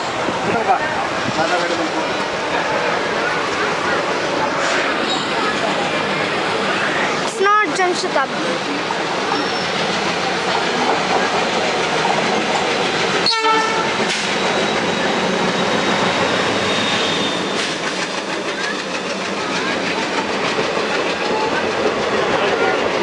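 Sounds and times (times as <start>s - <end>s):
train rumble: 0.0s - 23.0s
train wheels clattering over rail joints: 9.8s - 23.0s
locomotive horn: 13.2s - 14.1s.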